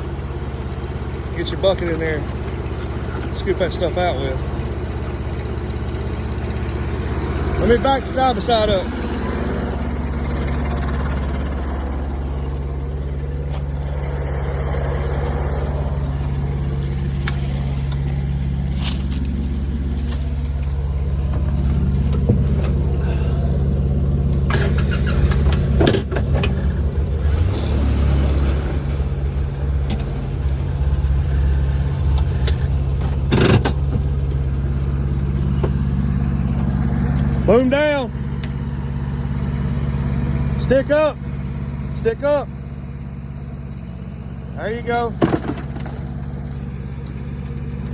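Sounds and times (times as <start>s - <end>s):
mini excavator engine running: 0.0s - 47.9s
utility vehicle engine running: 0.0s - 47.9s.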